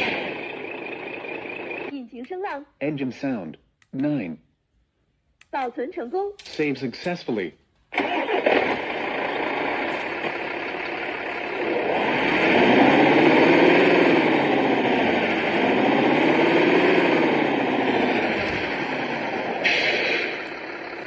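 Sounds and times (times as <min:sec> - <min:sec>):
simulated engine idling and revving: 0:00.0 - 0:01.9, 0:08.0 - 0:21.0.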